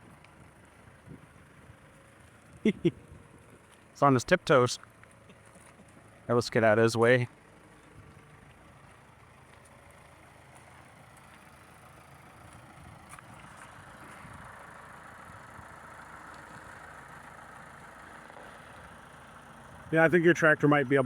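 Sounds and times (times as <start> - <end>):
forklift engine running: 0.0 - 21.0.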